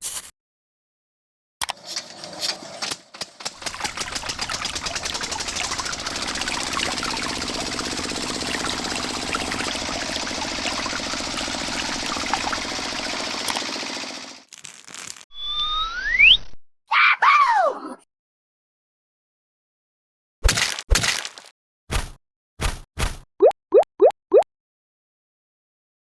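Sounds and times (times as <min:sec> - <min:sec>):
small machine clattering: 0:01.7 - 0:14.5.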